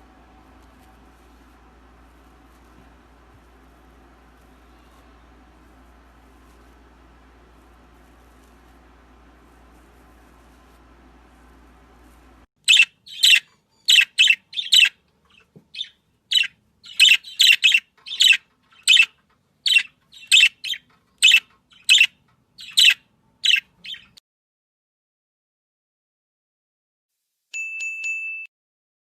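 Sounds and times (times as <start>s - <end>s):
bird chirping: 12.6s - 24.2s.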